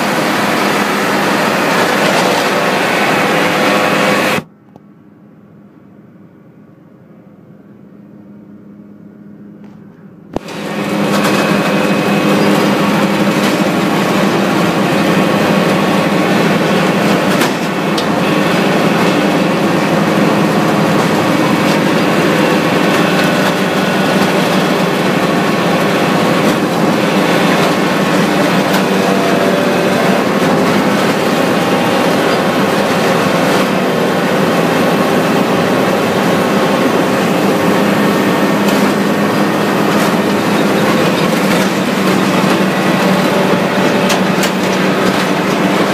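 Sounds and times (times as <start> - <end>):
debarker machine din: 10.1 - 45.9.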